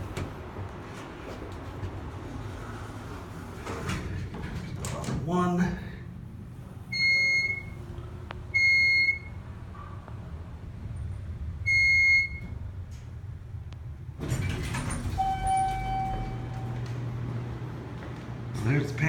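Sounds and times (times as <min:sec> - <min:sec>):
low steady tone: 0:15.2 - 0:16.9.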